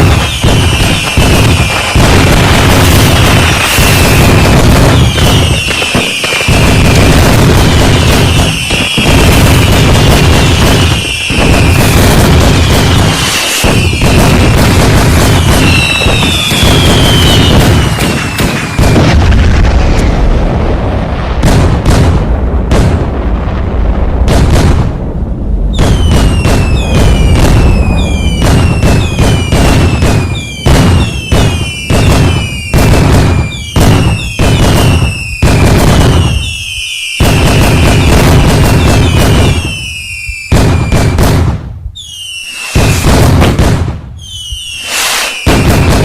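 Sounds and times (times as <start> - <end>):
fireworks bangs: 0.0 - 46.0
falling whistle: 15.6 - 18.9, 25.8 - 32.7, 36.2 - 38.0, 38.9 - 41.0, 42.0 - 43.1, 44.2 - 45.8.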